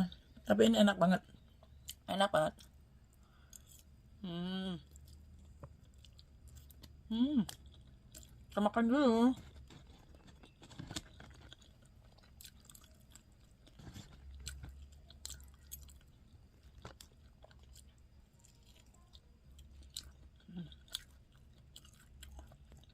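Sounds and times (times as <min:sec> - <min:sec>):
chewing noodles: 0:04.9 - 0:08.6, 0:09.4 - 0:22.9.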